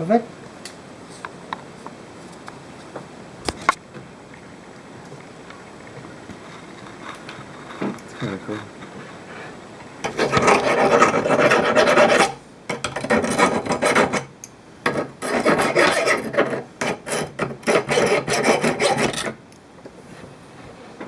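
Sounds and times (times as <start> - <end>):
abrasive rasping on glass edge: 6.3 - 19.4.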